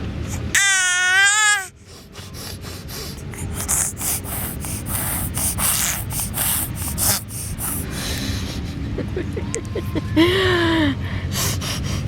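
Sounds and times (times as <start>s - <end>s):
baby snorting and snuffling: 2.0s - 8.2s.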